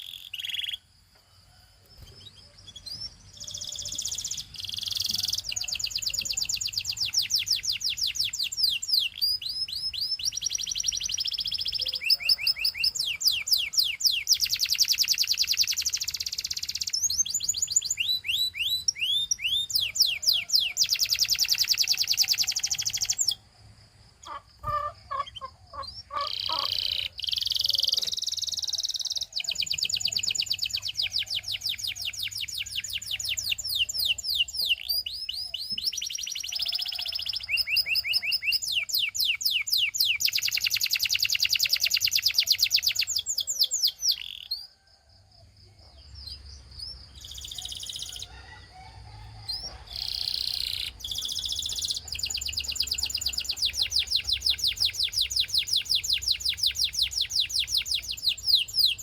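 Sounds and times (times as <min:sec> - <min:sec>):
canary singing: 0:00.0 - 0:00.9, 0:01.9 - 0:23.4, 0:24.2 - 0:44.8, 0:46.3 - 0:59.0.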